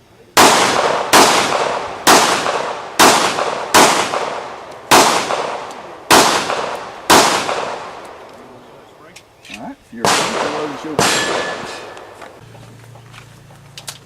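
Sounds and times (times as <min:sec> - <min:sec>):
pistol shots echoing: 0:00.4 - 0:08.3, 0:10.0 - 0:12.2.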